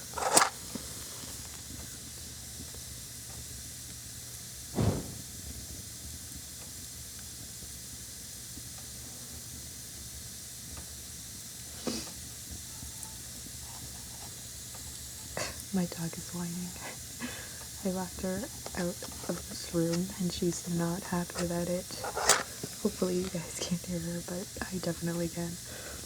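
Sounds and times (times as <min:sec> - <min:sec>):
steady hiss: 0:00.0 - 0:26.0
short sounds: 0:04.8 - 0:05.3.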